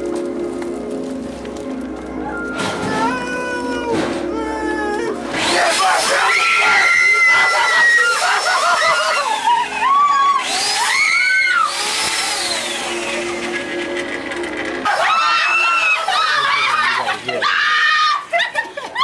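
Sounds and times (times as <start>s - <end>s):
people screaming in fright: 2.8s - 13.3s, 14.8s - 19.0s
chainsaw revving: 5.2s - 15.7s.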